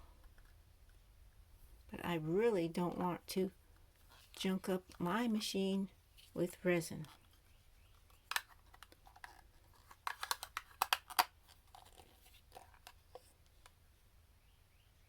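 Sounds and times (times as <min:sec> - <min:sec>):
packaging crinkling: 0:08.0 - 0:13.3
plastic parts clicking: 0:08.0 - 0:13.7.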